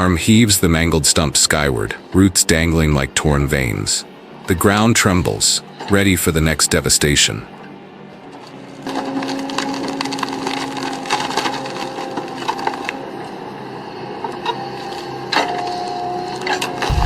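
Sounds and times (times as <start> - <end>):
heavy machinery engine: 7.5 - 17.0
wood cracking and splintering: 8.9 - 13.0.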